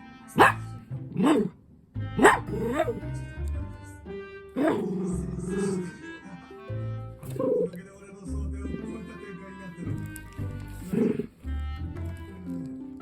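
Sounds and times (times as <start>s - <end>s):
background music: 0.0s - 13.0s
small dog yapping: 0.4s - 1.5s, 2.2s - 3.0s.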